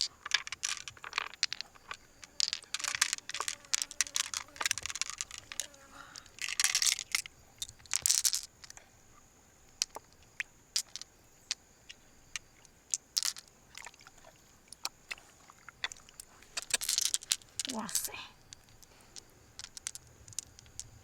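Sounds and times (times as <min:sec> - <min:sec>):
shells clicking and scraping: 0:00.0 - 0:08.9, 0:09.7 - 0:13.9, 0:14.7 - 0:21.0.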